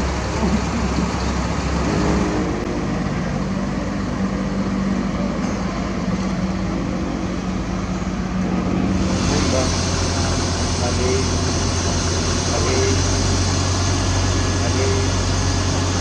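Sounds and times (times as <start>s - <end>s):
heavy diesel engine running: 0.0s - 16.0s.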